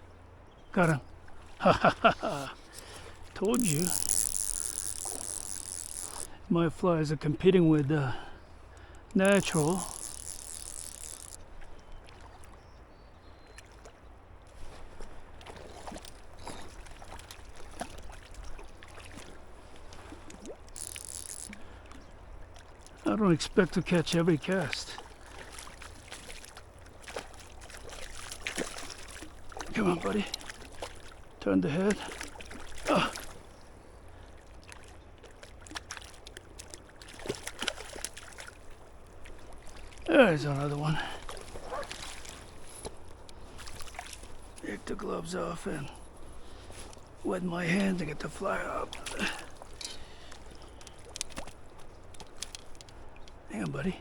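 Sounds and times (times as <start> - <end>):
river water lapping: 0.0 - 54.0
small splashes: 0.8 - 6.4, 7.8 - 54.0
small clicks: 3.5 - 6.3, 8.8 - 11.4, 19.9 - 21.6, 49.7 - 53.4
light clicks: 48.9 - 53.4.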